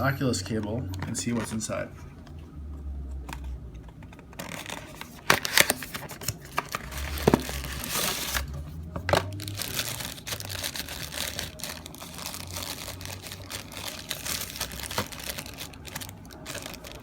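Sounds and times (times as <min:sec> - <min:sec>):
plastic packaging crinkling: 0:04.2 - 0:17.0.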